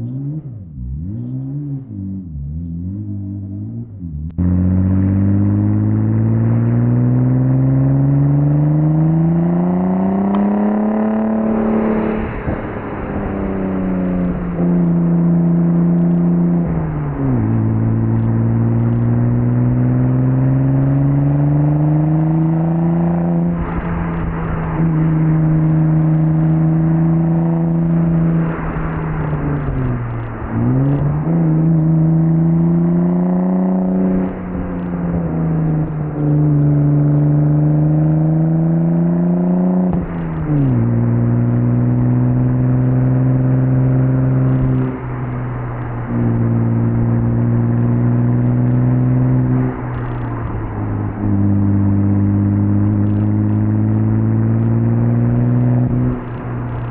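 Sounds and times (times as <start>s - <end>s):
car engine accelerating hard: 0.0s - 56.9s.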